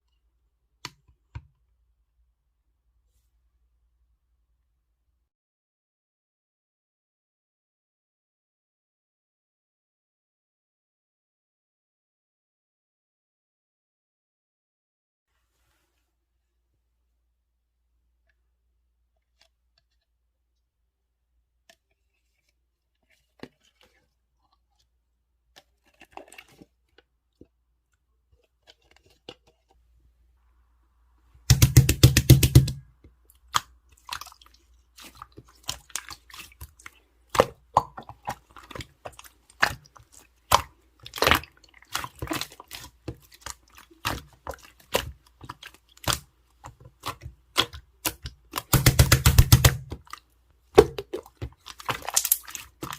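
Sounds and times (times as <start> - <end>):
slime clicking and popping: 47.0 - 50.0, 51.8 - 52.9.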